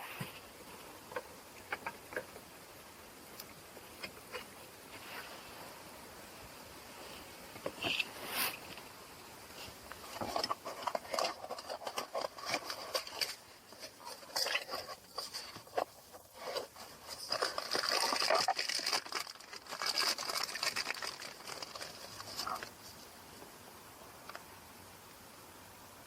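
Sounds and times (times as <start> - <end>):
small clicks and rattles: 9.9 - 23.1.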